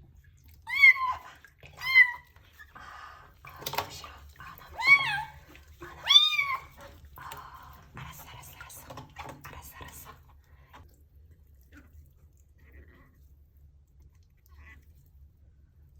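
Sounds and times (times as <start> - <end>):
water splashing: 0.0 - 10.9
kitten meowing: 6.0 - 6.8.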